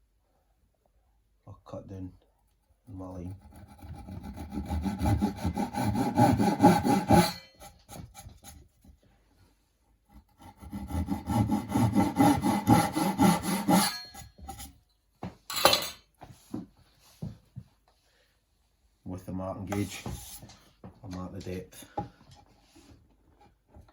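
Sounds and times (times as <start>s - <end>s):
hand saw cutting wood: 2.9s - 8.6s, 10.1s - 14.7s.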